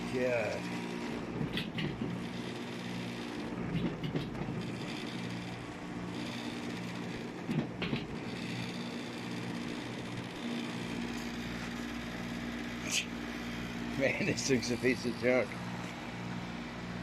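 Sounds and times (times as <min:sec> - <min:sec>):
air conditioner grille rattling: 0:00.6 - 0:08.7.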